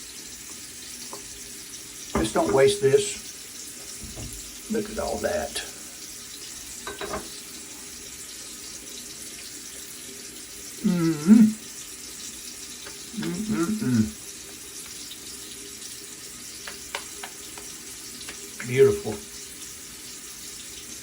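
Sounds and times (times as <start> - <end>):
tap running into a sink: 0.4 - 1.4, 2.0 - 5.7, 6.8 - 7.5, 12.7 - 13.4, 16.5 - 19.6
man's wordless voice: 2.2 - 3.2, 4.7 - 5.8, 13.2 - 14.1, 18.6 - 19.3.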